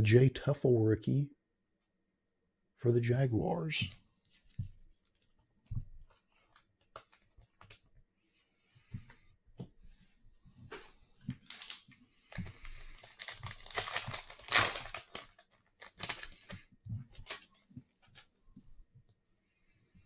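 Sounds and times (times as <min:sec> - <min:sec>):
foil pack crinkling: 0:11.4 - 0:18.3.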